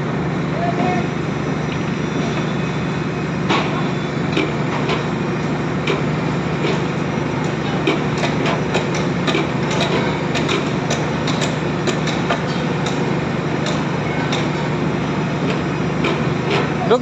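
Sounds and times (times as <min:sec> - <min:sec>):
machine engine running: 0:00.0 - 0:17.0.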